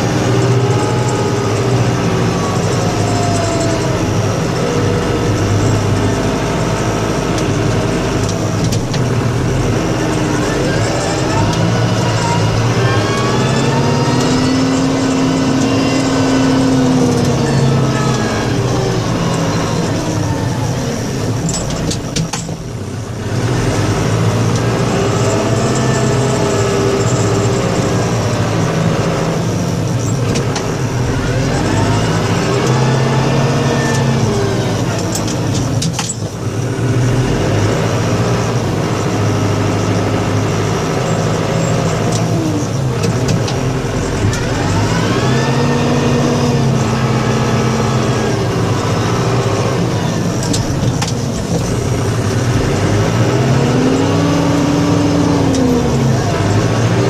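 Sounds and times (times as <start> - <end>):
plow truck engine under load: 0.0 - 57.0.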